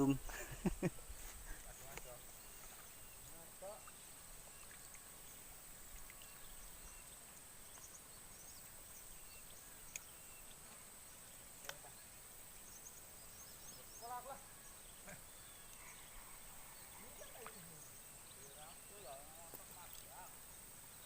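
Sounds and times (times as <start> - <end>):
faint hiss: 0.0 - 21.0
faint high chirps: 2.0 - 12.0.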